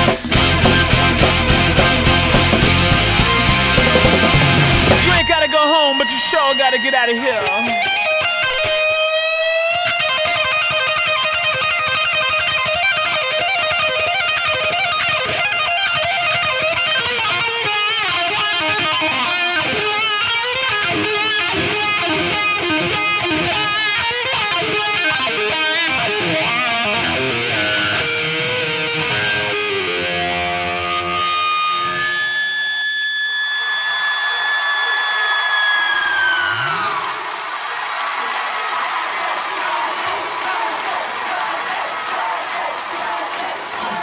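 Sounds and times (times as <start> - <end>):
band playing: 0.0 - 9.8
electric guitar lead: 0.0 - 33.6.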